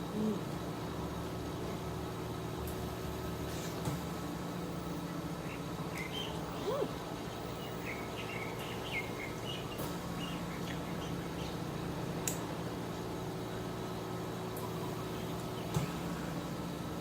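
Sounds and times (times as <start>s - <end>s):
small birds chirping: 5.0s - 12.1s.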